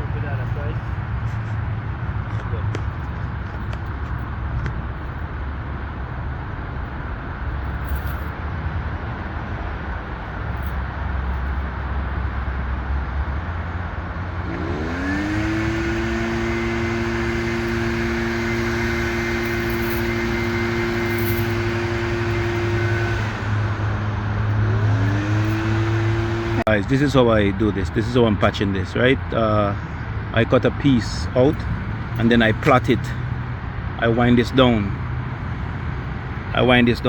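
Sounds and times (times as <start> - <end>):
outdoor machinery rumble: 0.0 - 37.0
power tool motor whine: 14.2 - 26.7.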